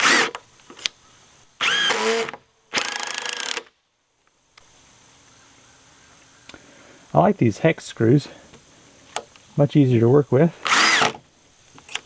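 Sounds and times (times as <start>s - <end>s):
impact driver driving screws: 0.0s - 0.4s, 1.6s - 3.7s, 10.6s - 11.2s.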